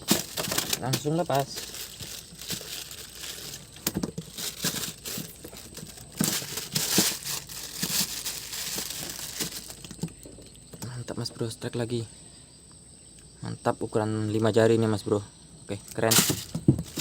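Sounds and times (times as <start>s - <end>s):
rustling and crinkling: 0.0s - 10.8s, 15.8s - 17.0s.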